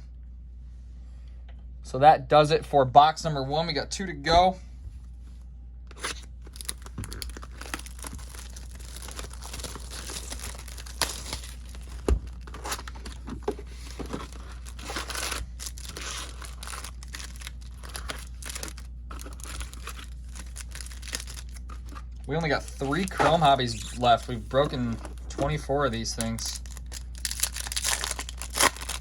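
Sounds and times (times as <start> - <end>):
plastic wrapping crinkling and tearing: 5.9 - 29.0.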